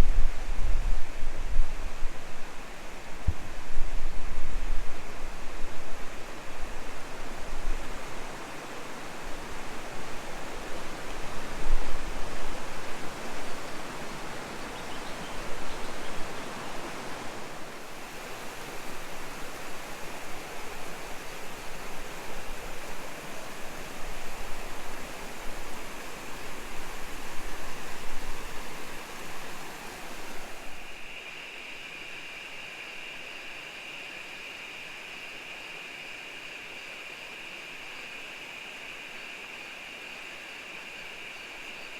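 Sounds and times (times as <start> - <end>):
wind on microphone: 0.0 - 8.2
rushing river water: 0.3 - 32.8.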